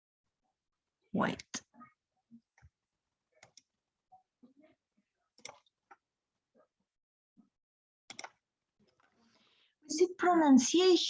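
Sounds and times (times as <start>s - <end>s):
faint clicks and taps: 2.4s - 2.8s.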